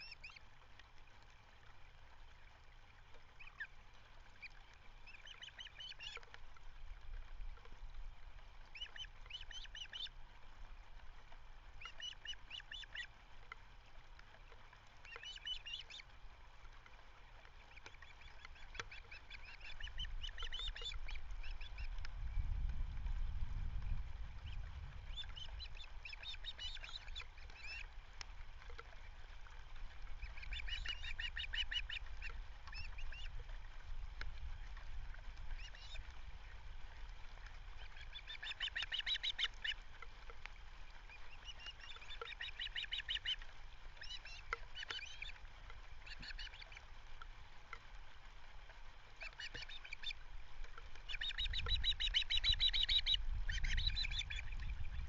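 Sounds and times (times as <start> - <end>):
wind rumble on microphone: 19.9 - 37.9, 51.3 - 55.0.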